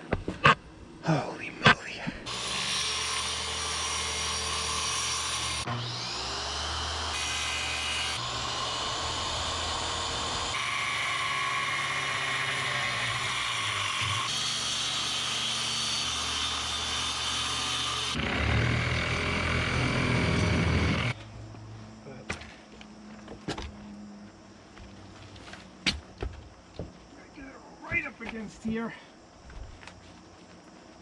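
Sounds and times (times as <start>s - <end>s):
electric power tool cutting wood: 2.3s - 21.2s.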